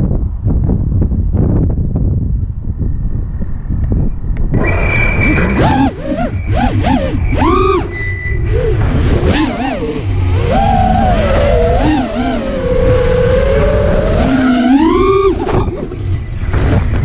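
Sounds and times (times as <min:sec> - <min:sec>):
wind rumble on microphone: 0:00.0 - 0:17.0
motor whining: 0:04.6 - 0:16.9.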